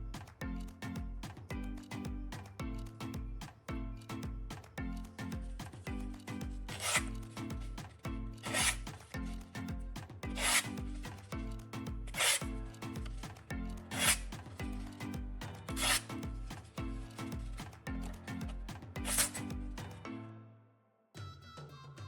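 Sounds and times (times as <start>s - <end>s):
background music: 0.0s - 22.0s
knife scraping on sharpener: 6.7s - 7.2s, 8.4s - 8.9s, 10.3s - 11.2s, 12.1s - 12.5s, 13.9s - 14.3s, 15.8s - 16.2s, 19.1s - 19.5s.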